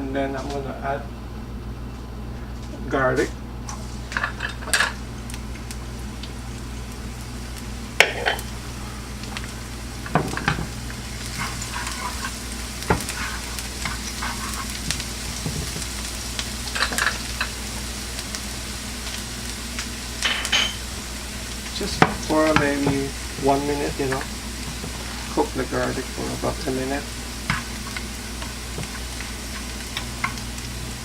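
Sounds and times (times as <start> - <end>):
garlic sizzling in oil: 3.6 - 31.0
spatula scraping a pan: 11.2 - 15.9, 21.8 - 30.4.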